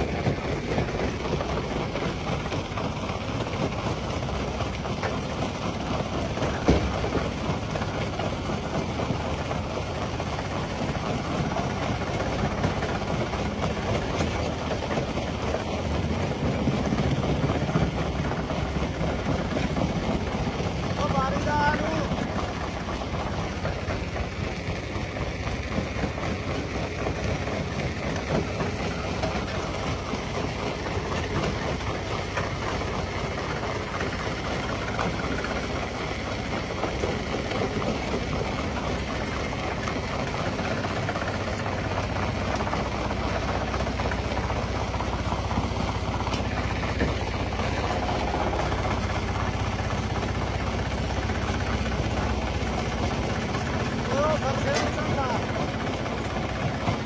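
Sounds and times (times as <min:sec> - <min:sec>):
crusher engine drone: 0:00.0 - 0:57.0.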